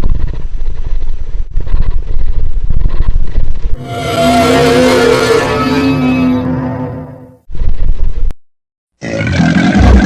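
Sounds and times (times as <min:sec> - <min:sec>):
low rasping creature growl: 0:03.8 - 0:07.3.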